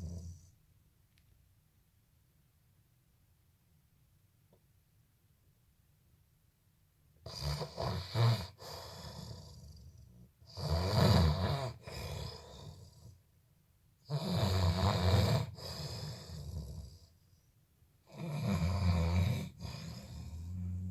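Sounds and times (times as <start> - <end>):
person snoring: 18.1 - 20.9.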